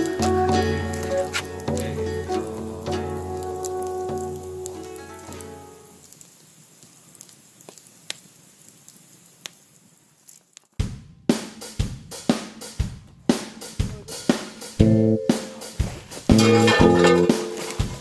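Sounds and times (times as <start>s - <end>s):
faint crackles and ticks: 3.2s - 10.8s
drum-kit beat: 10.8s - 18.0s.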